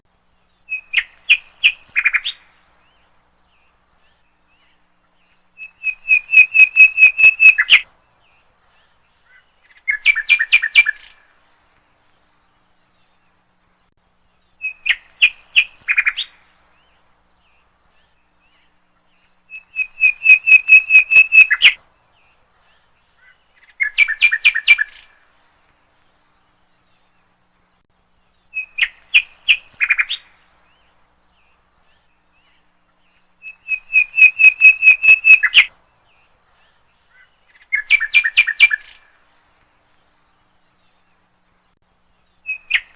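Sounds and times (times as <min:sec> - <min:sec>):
birds chirping and trilling: 0:00.1 - 0:42.9.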